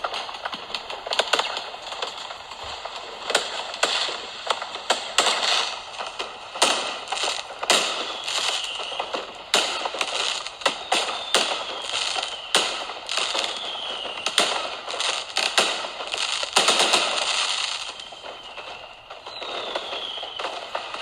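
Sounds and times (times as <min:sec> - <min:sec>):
fireworks bangs: 0:00.0 - 0:21.0
fireworks crackling: 0:00.0 - 0:21.0
falling whistles: 0:06.6 - 0:21.0.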